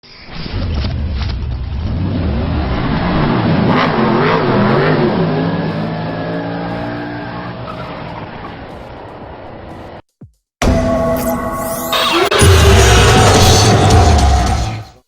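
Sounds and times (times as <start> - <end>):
vehicle engine revving: 0.7 - 10.0.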